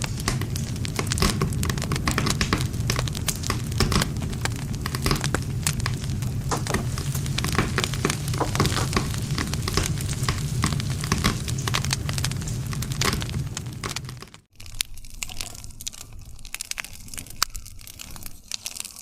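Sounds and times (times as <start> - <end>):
low rumble of flame: 0.0 - 18.8
campfire crackling and popping: 0.0 - 19.0.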